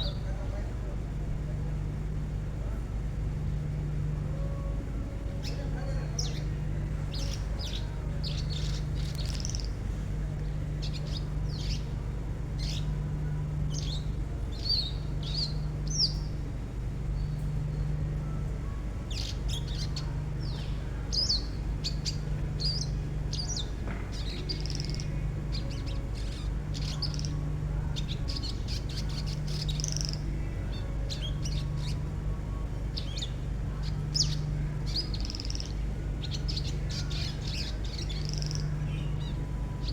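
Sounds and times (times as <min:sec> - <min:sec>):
low hum: 0:00.0 - 0:39.9
songbird harsh chirps: 0:04.3 - 0:16.4, 0:17.1 - 0:39.9.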